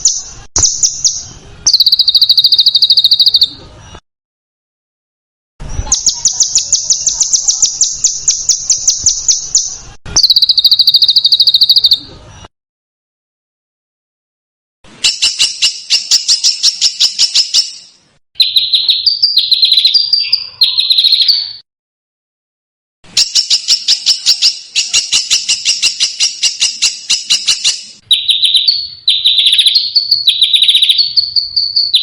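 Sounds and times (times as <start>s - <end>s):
songbird calls: 0.0s - 3.6s, 5.8s - 12.1s, 15.0s - 21.6s, 23.2s - 32.0s.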